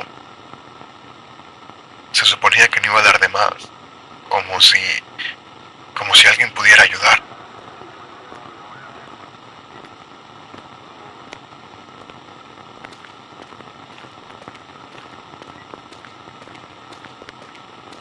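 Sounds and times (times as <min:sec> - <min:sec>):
steady hiss: 0:00.0 - 0:18.0
small crackles and clicks: 0:07.6 - 0:18.0.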